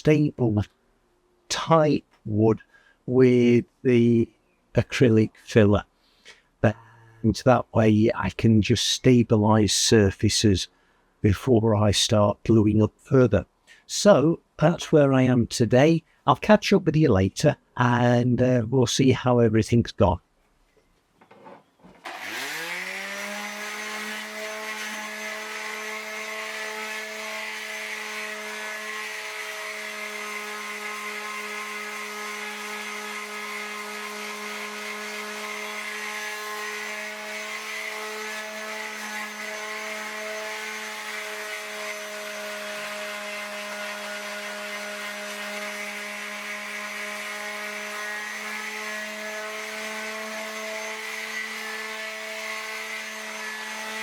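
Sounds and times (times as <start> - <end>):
power sander sanding wood: 22.0 - 54.0.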